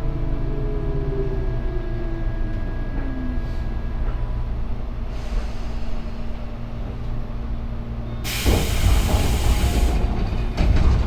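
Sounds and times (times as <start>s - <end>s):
train rumble: 0.0s - 11.0s
compressed air hiss: 8.3s - 10.0s.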